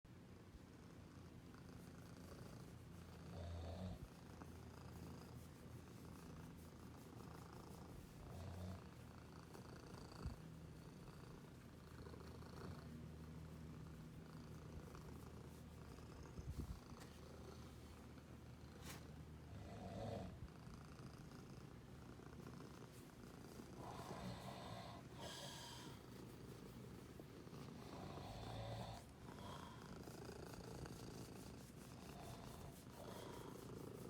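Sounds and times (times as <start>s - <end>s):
cat purring: 0.6s - 34.0s.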